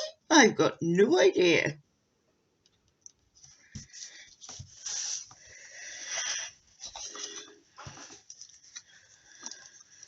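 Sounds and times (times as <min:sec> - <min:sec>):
paper rustling and sliding: 0:03.5 - 0:10.0.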